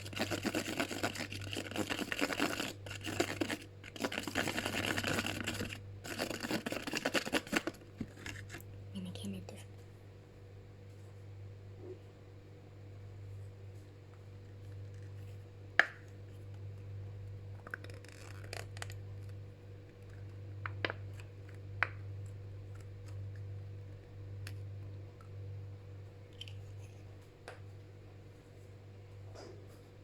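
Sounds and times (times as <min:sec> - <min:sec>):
spoon stirring slime in a bowl: 0:00.0 - 0:09.2
low steady hum: 0:00.0 - 0:30.0.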